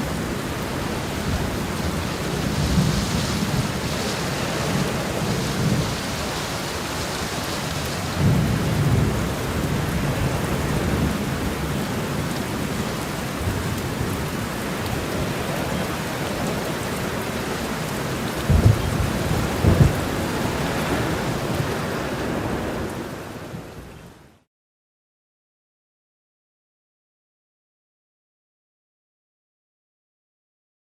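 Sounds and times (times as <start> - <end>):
rolling thunder: 0.0 - 23.6
heavy rain: 0.0 - 24.5
sharp thunder claps: 8.1 - 11.6, 18.4 - 21.8.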